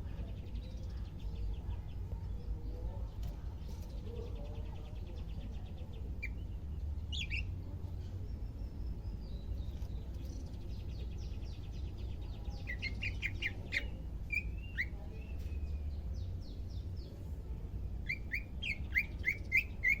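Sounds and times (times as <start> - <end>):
low steady rumble: 0.0 - 20.0
bird singing high chipping notes: 17.8 - 20.0.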